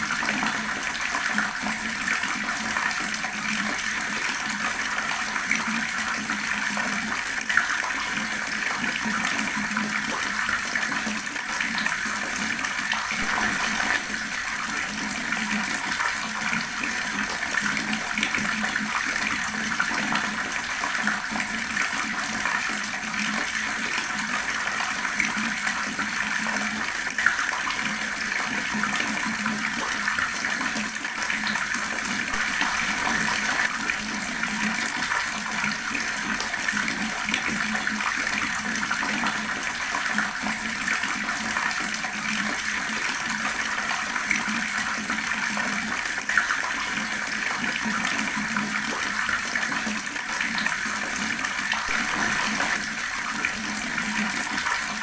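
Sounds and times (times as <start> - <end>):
water tap running and gurgling: 0.0 - 55.0
water splashes: 9.0 - 22.2, 31.3 - 39.0, 50.1 - 55.0.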